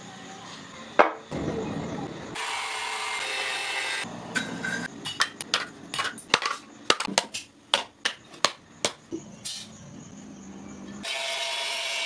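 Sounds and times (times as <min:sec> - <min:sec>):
hard objects clicking and knocking: 0:05.2 - 0:09.1.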